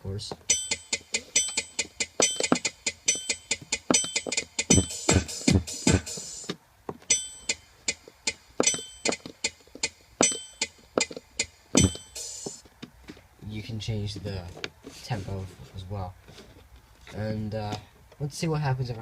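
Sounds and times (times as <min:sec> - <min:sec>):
electronic metronome clicks: 0:00.4 - 0:05.2, 0:07.1 - 0:12.6
bright ringing tone: 0:00.5 - 0:05.2, 0:07.1 - 0:07.7, 0:08.6 - 0:09.3, 0:10.2 - 0:10.8, 0:11.8 - 0:12.5
deep drum-like thumps: 0:03.6 - 0:06.5, 0:11.8 - 0:12.6.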